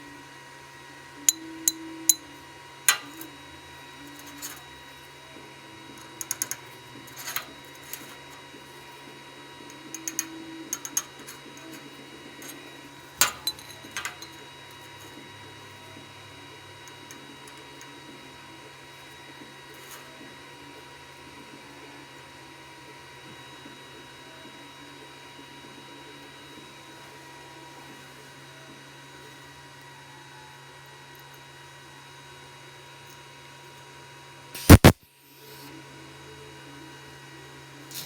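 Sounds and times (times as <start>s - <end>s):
faint steady hum: 0.0s - 27.7s
metal pieces clinking: 6.1s - 8.3s, 9.9s - 11.8s, 13.2s - 14.4s.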